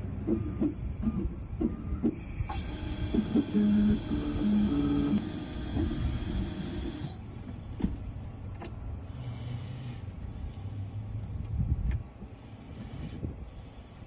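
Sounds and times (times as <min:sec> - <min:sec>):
low hum: 0:00.0 - 0:12.1
key-cutting machine whine: 0:02.4 - 0:07.2.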